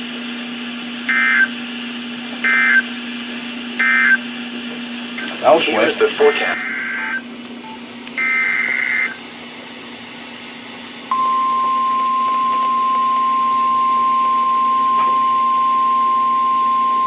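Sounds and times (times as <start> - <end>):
warbling data tones: 5.2 - 9.2
steady alarm tone: 5.2 - 9.4, 10.6 - 16.9.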